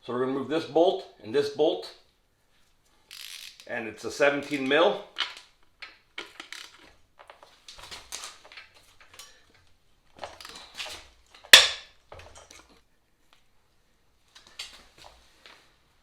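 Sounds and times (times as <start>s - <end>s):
sharp metallic clank: 11.6s - 11.9s
wrench and metal parts clinking: 11.6s - 11.9s.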